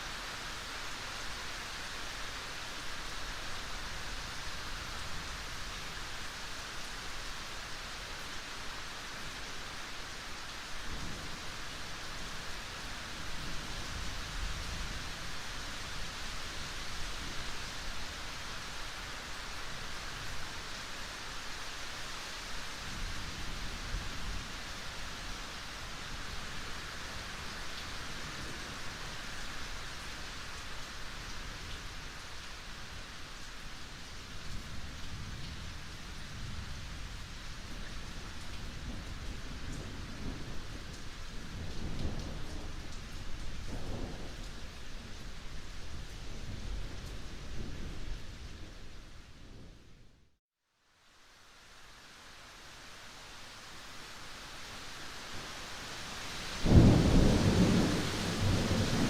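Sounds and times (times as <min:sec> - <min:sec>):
rain hissing: 0:00.0 - 0:49.6, 0:51.0 - 0:59.0
low rolling thunder: 0:38.7 - 0:49.8, 0:56.4 - 0:59.0.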